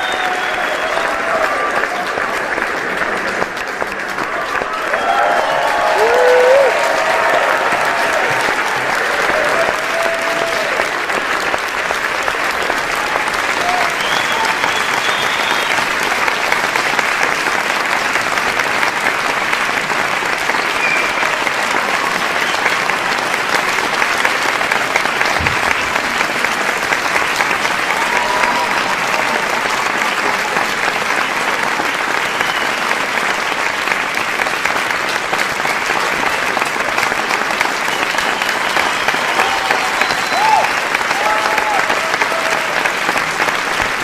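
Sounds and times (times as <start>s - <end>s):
audience clapping: 0.0s - 44.0s.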